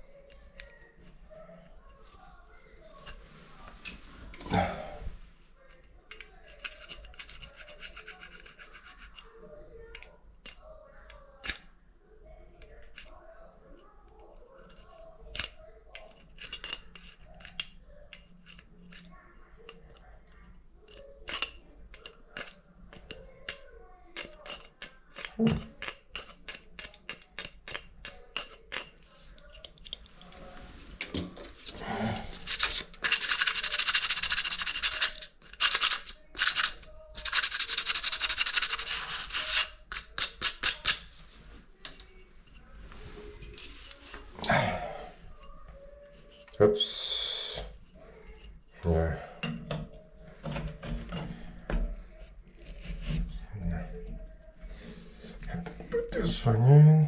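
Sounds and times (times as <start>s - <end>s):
loud rubbing on hard surface: 31.5s - 41.2s.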